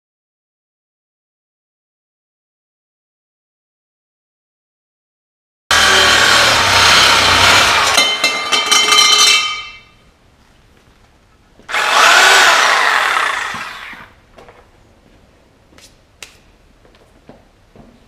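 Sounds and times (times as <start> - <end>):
power tool cutting steel pipe: 5.7 - 8.6, 11.7 - 14.2
metallic ringing: 7.9 - 10.1.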